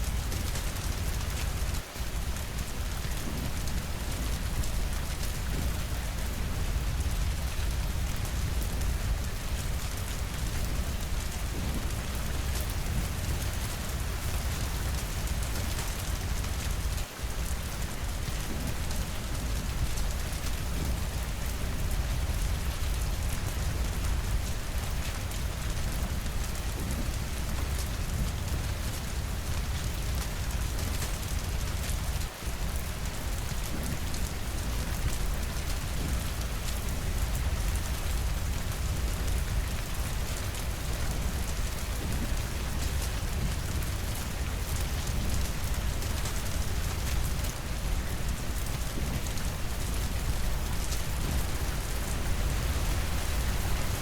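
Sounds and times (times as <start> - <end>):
rain hissing: 30.4 - 54.0.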